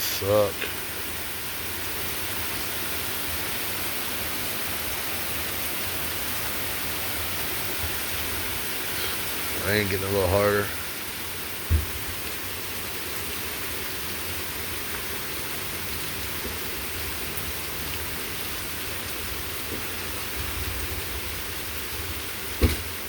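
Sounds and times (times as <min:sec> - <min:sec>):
steady rain hiss: 0:00.0 - 0:23.0
short thump: 0:11.7 - 0:12.0, 0:22.6 - 0:23.0.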